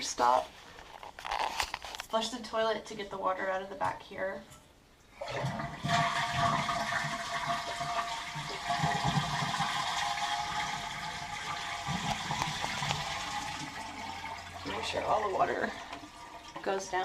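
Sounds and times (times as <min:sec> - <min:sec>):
toilet flushing: 0:05.1 - 0:17.0.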